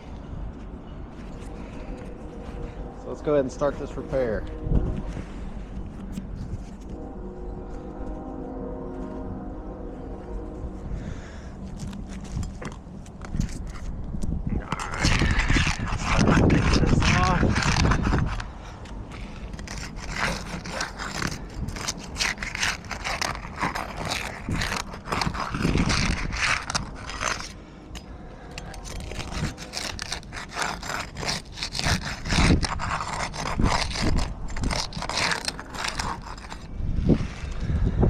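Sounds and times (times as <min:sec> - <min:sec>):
metal bar scraping roof shingles: 0:28.6 - 0:36.6.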